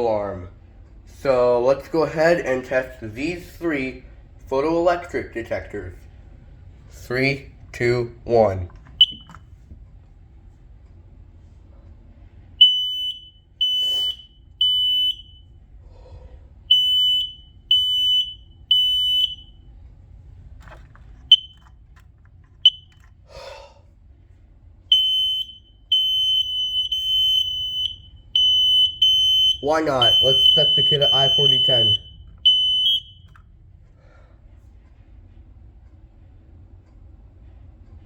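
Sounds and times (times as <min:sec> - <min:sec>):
smoke alarm beeping: 0:09.0 - 0:09.5, 0:12.6 - 0:15.6, 0:16.7 - 0:19.7, 0:21.3 - 0:21.8, 0:22.6 - 0:23.1, 0:24.9 - 0:33.4.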